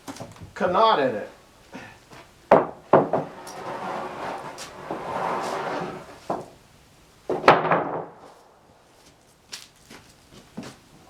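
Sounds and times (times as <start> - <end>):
wooden knocks: 2.5 - 6.5
wooden board scraping: 2.5 - 6.6
wooden boards clattering: 2.5 - 6.6, 7.3 - 8.3.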